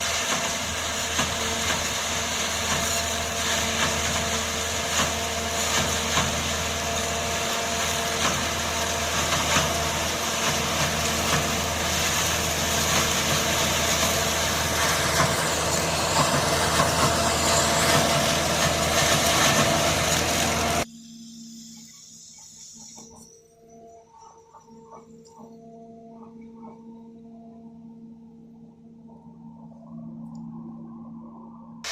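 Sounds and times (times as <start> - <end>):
tractor engine running: 0.0 - 20.9.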